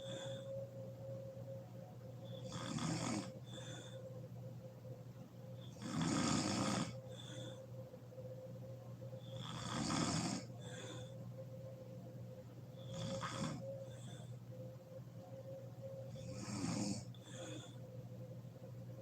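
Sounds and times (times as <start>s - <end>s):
soft breath: 0.0s - 0.8s, 3.3s - 4.4s, 6.9s - 8.0s, 10.4s - 11.8s, 12.7s - 14.7s, 16.2s - 18.4s
faint steady hum: 0.0s - 19.0s
woman snoring: 2.3s - 4.0s, 5.6s - 7.6s, 9.2s - 11.1s, 12.8s - 14.2s, 16.1s - 17.8s.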